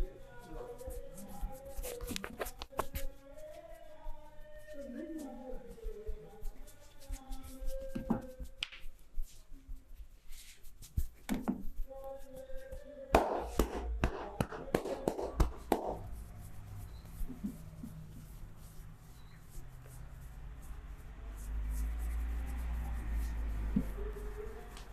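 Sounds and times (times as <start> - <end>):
hands slapping and tapping: 7.4 - 9.0, 13.2 - 16.0.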